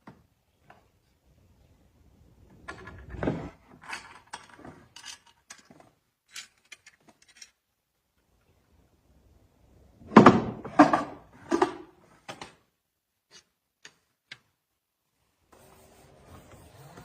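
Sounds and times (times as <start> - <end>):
wooden drawers sliding and shutting: 2.6 - 5.0, 10.0 - 12.6.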